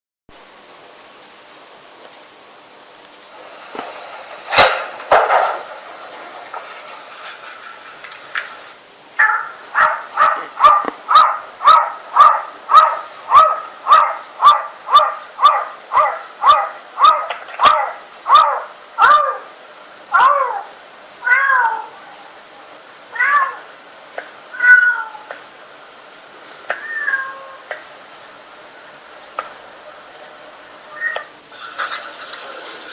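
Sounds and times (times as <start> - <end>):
cat meowing through a speaker: 20.2 - 22.0, 23.1 - 23.7, 24.5 - 25.3, 26.7 - 27.6, 30.9 - 31.4.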